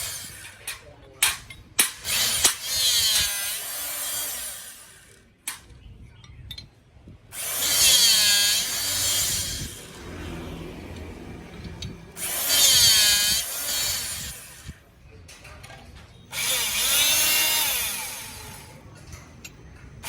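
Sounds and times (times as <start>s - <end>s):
hydraulic rebar cutter whine: 0.0s - 0.6s, 2.0s - 5.1s, 7.3s - 14.8s, 16.3s - 18.8s.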